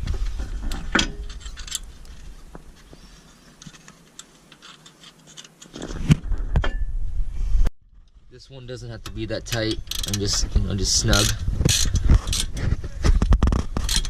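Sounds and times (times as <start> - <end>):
small metal clicks: 0.7 - 2.3, 3.2 - 5.8, 8.9 - 10.4, 11.0 - 12.5, 13.4 - 14.0.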